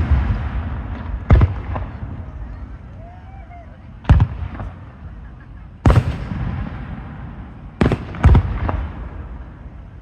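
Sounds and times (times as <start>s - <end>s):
firework bangs echoing: 0.0s - 2.3s, 4.0s - 5.0s, 5.8s - 9.8s.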